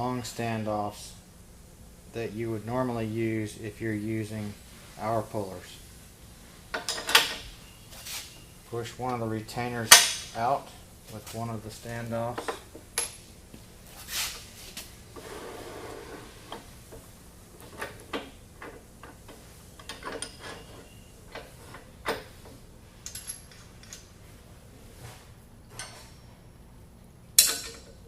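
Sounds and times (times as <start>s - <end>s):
metal scraping rub: 14.0s - 16.5s
metal parts clicking and clinking: 19.8s - 22.3s, 23.0s - 24.1s, 27.4s - 28.0s.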